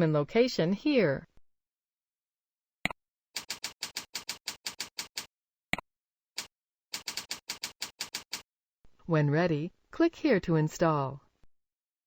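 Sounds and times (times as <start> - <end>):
computer keyboard typing: 3.4 - 5.3, 6.4 - 8.4.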